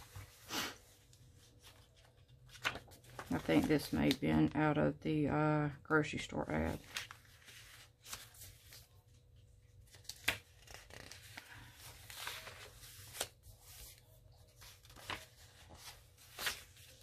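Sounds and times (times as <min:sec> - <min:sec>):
paper pages rustling: 0:00.0 - 0:04.5, 0:06.5 - 0:17.0
paper crinkles and taps: 0:01.6 - 0:04.3, 0:14.6 - 0:17.0.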